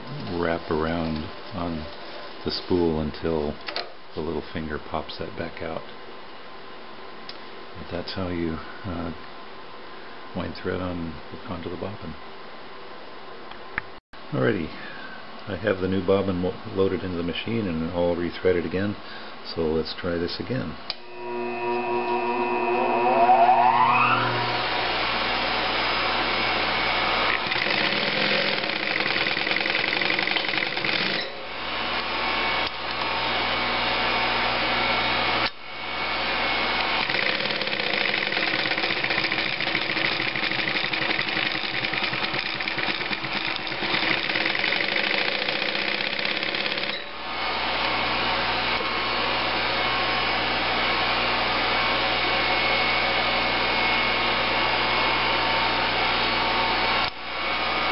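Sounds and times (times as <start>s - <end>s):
sewing machine stitching: 27.3s - 31.3s, 37.0s - 47.1s.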